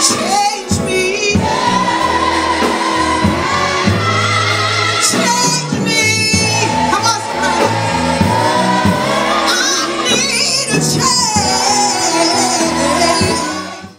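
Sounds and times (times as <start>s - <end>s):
band playing: 0.0s - 13.9s
gospel singers: 0.0s - 13.9s
steady bass line: 0.0s - 13.9s.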